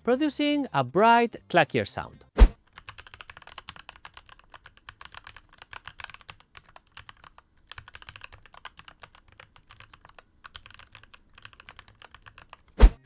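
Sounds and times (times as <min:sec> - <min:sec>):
mechanical keyboard typing: 0:02.7 - 0:12.8.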